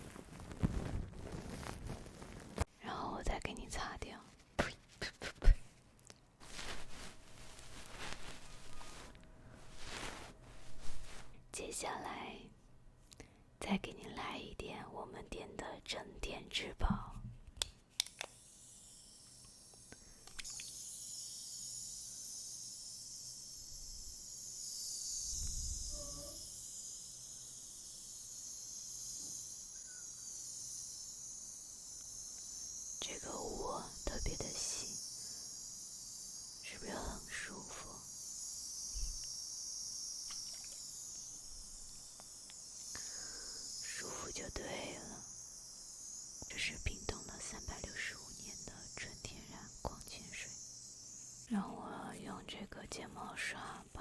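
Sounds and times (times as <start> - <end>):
small clicks: 17.6 - 18.4, 20.2 - 20.8
mist sprayer hissing: 18.6 - 51.5.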